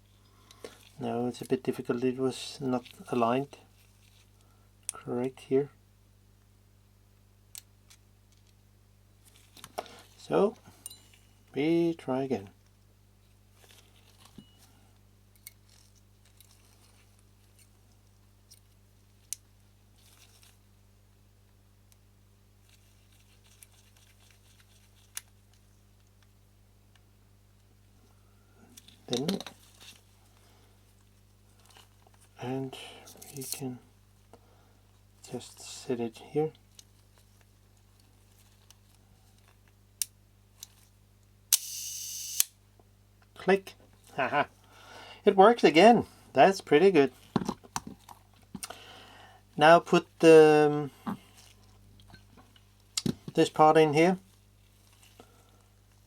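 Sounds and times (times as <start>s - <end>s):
camera shutter clicks: 41.5s - 42.5s
shutter buzz: 41.5s - 42.6s.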